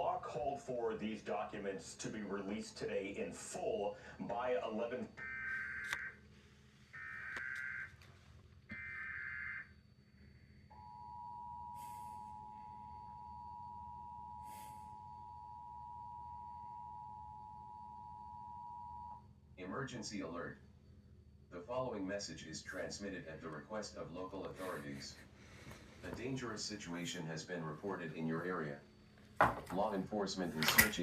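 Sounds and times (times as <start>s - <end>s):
screechy digital data bursts: 5.2s - 6.1s, 7.0s - 7.9s.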